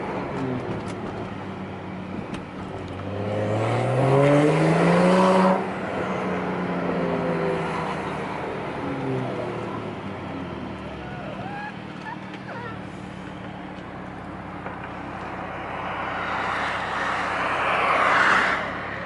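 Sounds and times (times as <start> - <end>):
car exhaust accelerating: 9.0 - 19.0.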